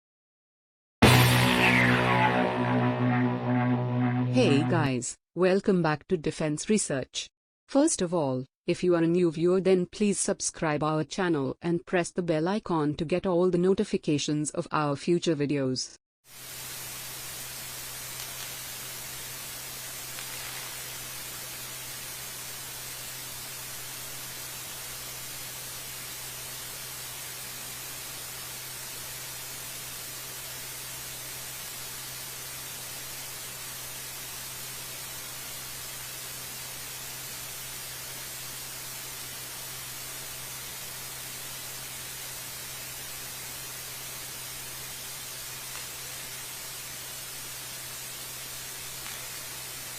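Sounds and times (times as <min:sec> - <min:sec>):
steady static hiss: 0:16.4 - 0:28.7, 0:31.4 - 0:49.9.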